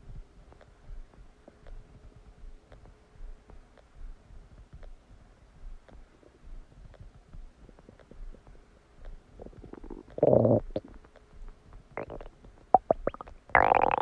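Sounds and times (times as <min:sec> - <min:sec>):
stomach pops and squeaks: 0:09.0 - 0:11.2, 0:12.0 - 0:14.0
stomach gurgling: 0:09.3 - 0:11.0, 0:12.0 - 0:14.0.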